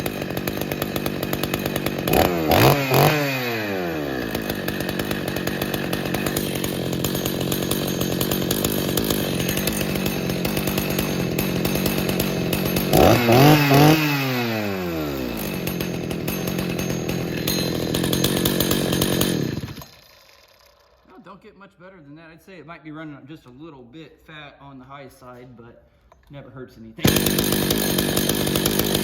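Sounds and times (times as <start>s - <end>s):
chainsaw engine idling: 0.0s - 21.2s, 27.0s - 29.0s
chainsaw throttle blips: 0.0s - 21.2s, 27.0s - 29.0s.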